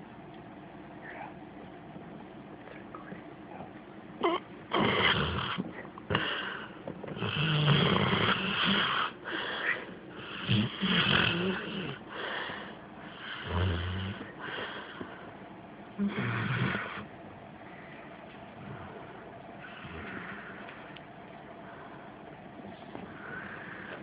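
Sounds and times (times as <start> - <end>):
dog snoring: 4.2 - 9.2, 10.2 - 12.1, 13.1 - 15.0, 16.0 - 17.1, 19.6 - 20.6.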